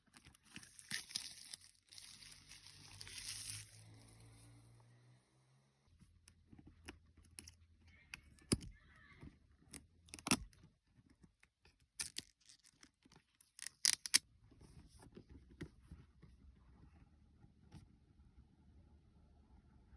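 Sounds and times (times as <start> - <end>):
packaging tearing and crinkling: 0.3 - 3.8.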